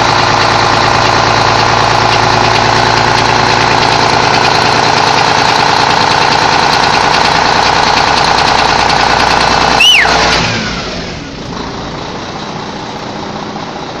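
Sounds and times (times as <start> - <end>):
diesel engine idling with knocking: 0.0 - 14.0
loud sound with falling whistle: 9.7 - 10.5.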